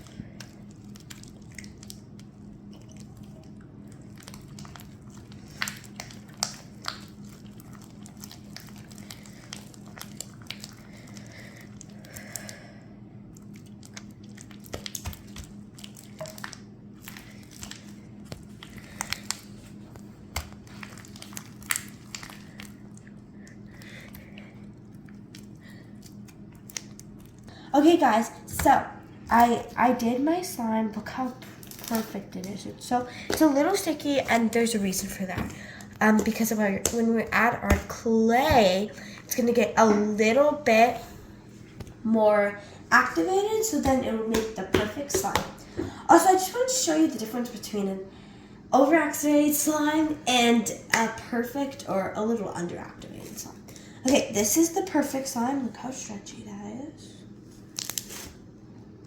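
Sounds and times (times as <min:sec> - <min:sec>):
steady low hum: 0:00.0 - 0:59.0
slime wet clicks and squelches: 0:00.4 - 0:12.5, 0:13.3 - 0:27.5.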